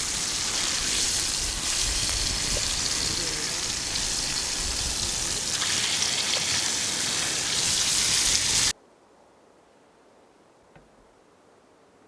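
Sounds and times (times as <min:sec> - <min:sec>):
food sizzling in a pan: 0:00.0 - 0:08.7.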